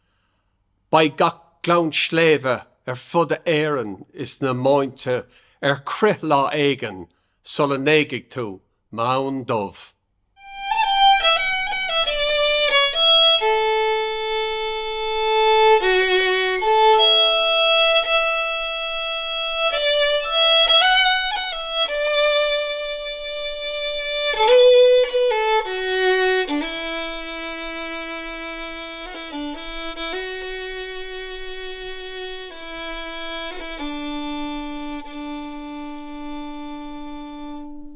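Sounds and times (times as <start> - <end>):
solo fiddle slow melody: 10.4 - 37.9.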